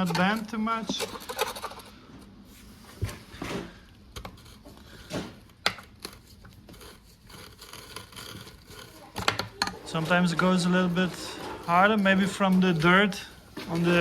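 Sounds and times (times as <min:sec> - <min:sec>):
metal parts clicking and knocking: 0:00.0 - 0:01.9.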